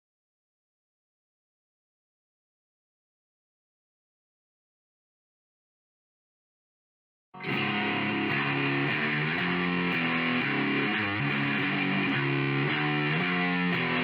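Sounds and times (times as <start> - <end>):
distorted electric guitar music: 7.4 - 14.0.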